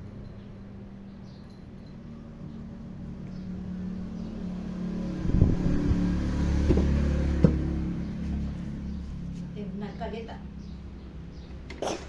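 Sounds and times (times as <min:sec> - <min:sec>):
vehicle engine running: 0:00.0 - 0:11.6
sharp knocks: 0:06.6 - 0:07.8.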